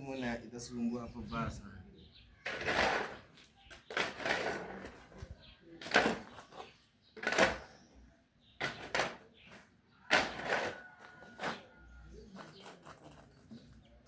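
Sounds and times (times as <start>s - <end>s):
sharp knocks and scrapes: 2.4s - 7.9s, 8.6s - 14.0s.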